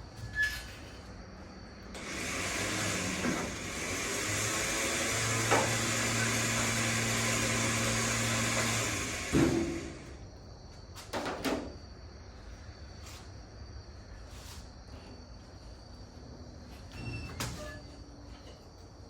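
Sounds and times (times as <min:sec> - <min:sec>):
machine hissing and humming: 0:01.9 - 0:10.3.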